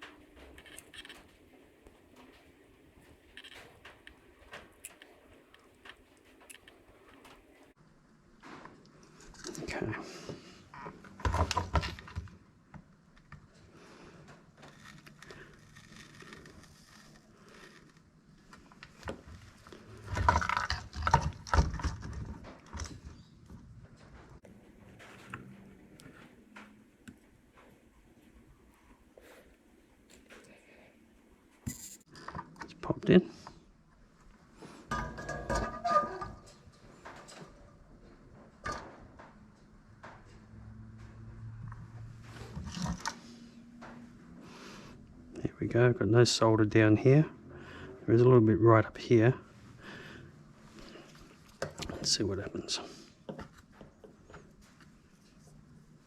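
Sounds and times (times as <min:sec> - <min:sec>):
tools knocking and rattling: 0:34.9 - 0:37.6.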